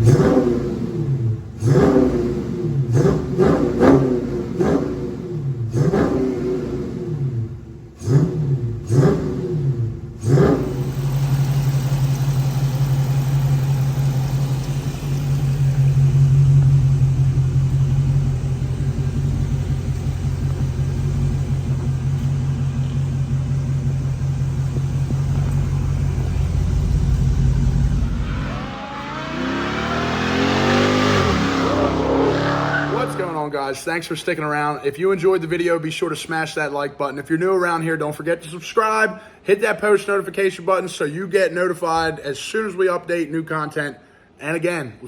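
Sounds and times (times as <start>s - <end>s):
car engine revving: 0.0s - 33.5s.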